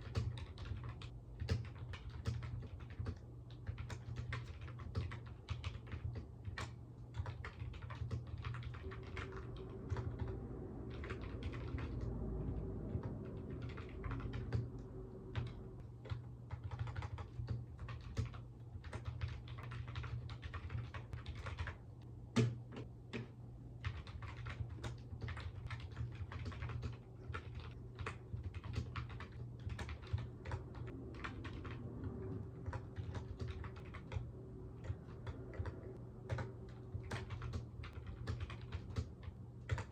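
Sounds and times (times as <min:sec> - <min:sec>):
low hum: 0:08.5 - 0:16.5, 0:26.9 - 0:39.9.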